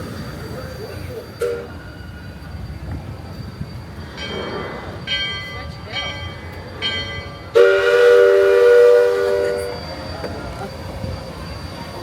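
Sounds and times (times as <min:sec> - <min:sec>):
bell strike: 0:04.2 - 0:07.6
chime steam whistle blast: 0:07.5 - 0:11.5.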